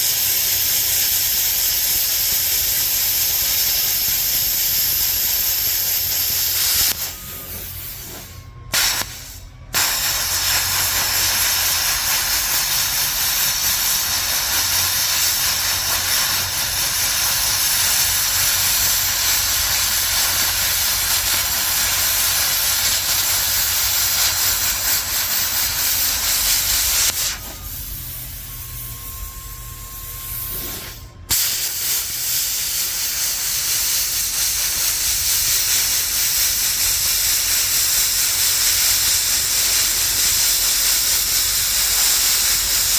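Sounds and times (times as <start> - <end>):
plasma cutter hissing: 0.0 - 42.9
faint steady tone: 27.4 - 31.3.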